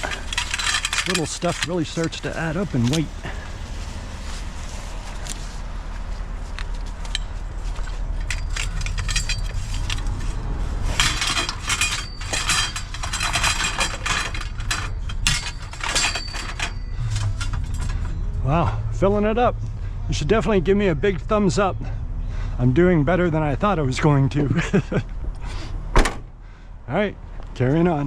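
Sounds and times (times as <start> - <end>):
metallic rings: 0.0 - 3.6, 7.1 - 18.4
scrap metal clattering: 0.0 - 5.6, 7.1 - 18.2
low steady hum: 0.0 - 25.8.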